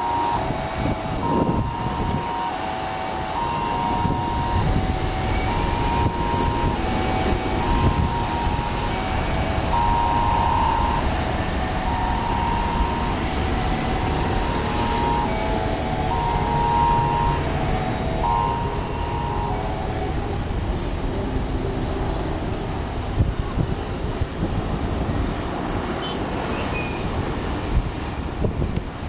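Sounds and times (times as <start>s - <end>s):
jet engines rumbling: 0.0s - 29.0s
slow melody of clear tones: 3.3s - 20.3s.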